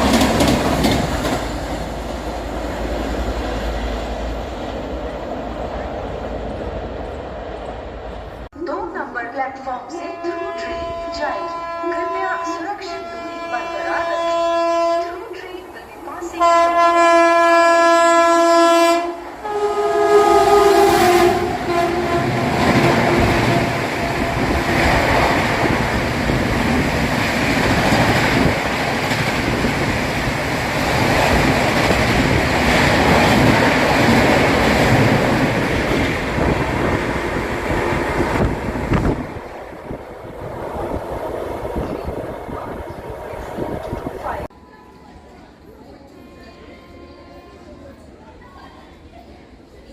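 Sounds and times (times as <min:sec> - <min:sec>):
train rushing past: 0:00.0 - 0:08.5, 0:10.0 - 0:46.3
train horn: 0:10.0 - 0:15.3, 0:16.2 - 0:25.2.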